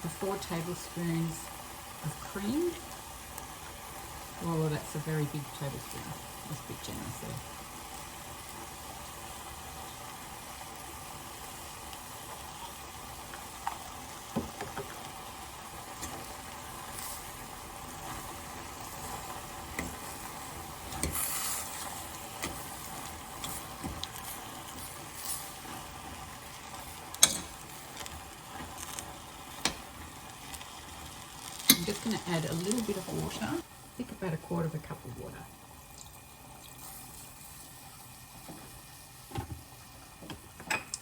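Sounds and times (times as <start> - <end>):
food sizzling: 0.0 - 41.0
utensil scraping a pot: 18.0 - 29.8, 31.5 - 33.6.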